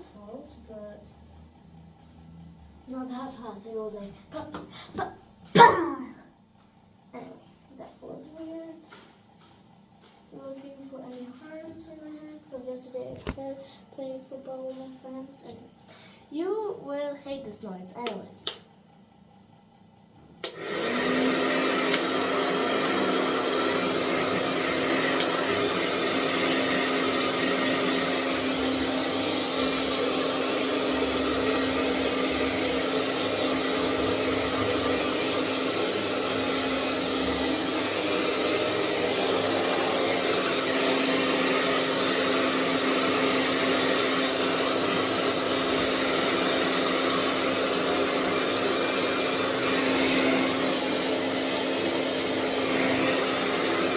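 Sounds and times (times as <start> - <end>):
hair dryer running: 0.0 - 53.9.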